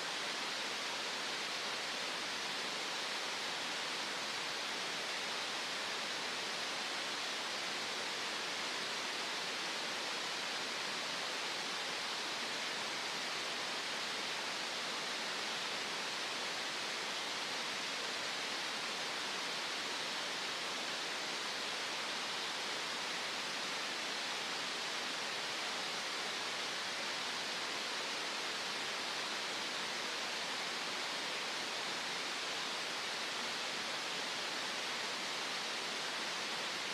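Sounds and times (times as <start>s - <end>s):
steady synthetic hiss: 0.0s - 36.9s.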